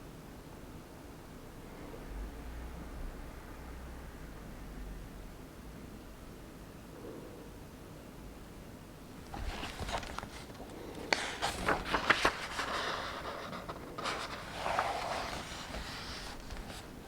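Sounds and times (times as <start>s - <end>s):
book page rustling: 9.1s - 17.0s
crisp paper snaps: 9.2s - 15.8s.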